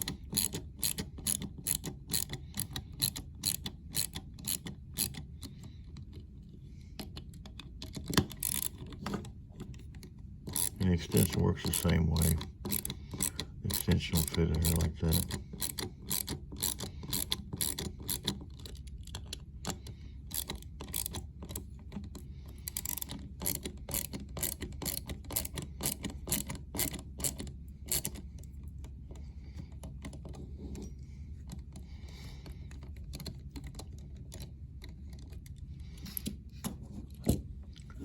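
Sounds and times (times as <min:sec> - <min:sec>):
ratchet driver clicking: 0:00.0 - 0:06.2, 0:07.0 - 0:09.0, 0:10.5 - 0:19.4, 0:20.3 - 0:21.6, 0:22.6 - 0:28.2.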